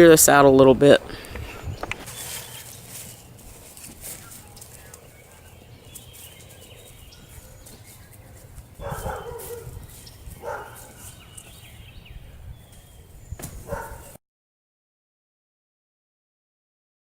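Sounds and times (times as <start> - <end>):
wind rumble on microphone: 0.4 - 2.1, 8.2 - 14.2
dog barking: 8.8 - 9.8, 10.4 - 11.2, 13.6 - 14.2.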